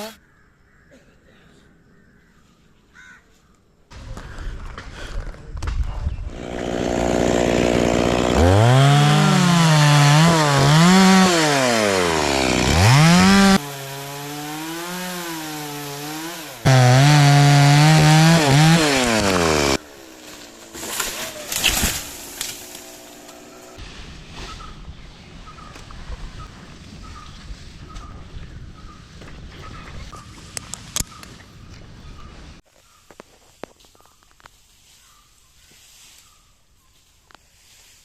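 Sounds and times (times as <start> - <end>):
chainsaw cutting wood: 6.3 - 23.8.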